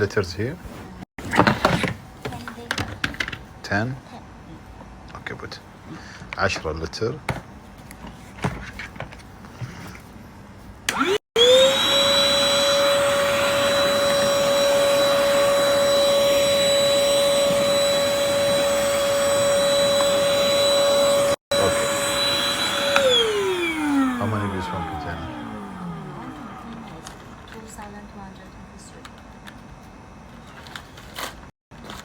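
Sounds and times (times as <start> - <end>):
vacuum cleaner motor whining: 10.9 - 27.7.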